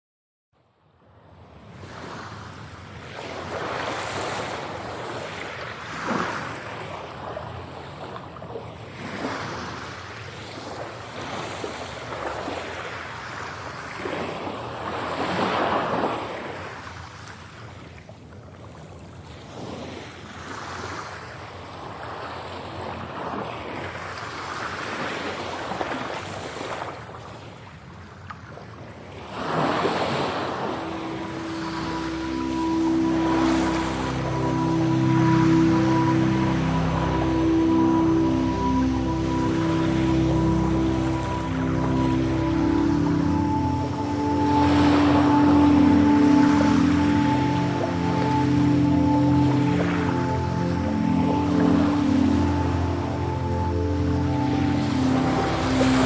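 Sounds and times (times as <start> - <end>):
ocean waves washing: 1.3 - 17.7, 28.6 - 56.0.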